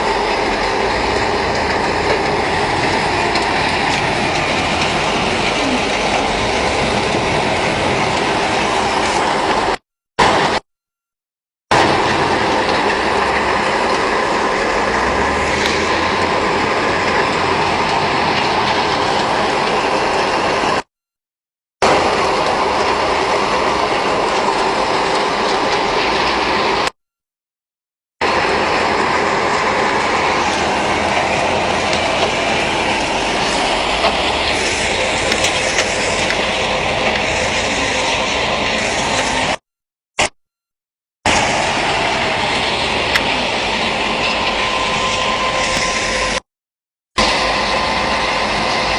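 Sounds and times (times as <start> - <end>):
loud rattling machine: 0.0 - 10.6, 11.7 - 20.9, 21.8 - 26.9, 28.2 - 39.6, 41.3 - 46.4, 47.2 - 48.9
sand and stones churning: 28.2 - 39.6.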